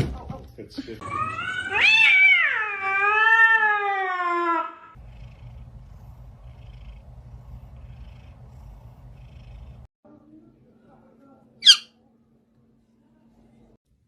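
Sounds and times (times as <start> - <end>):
cat meowing: 1.0 - 5.0
low steady rumble: 5.0 - 9.9.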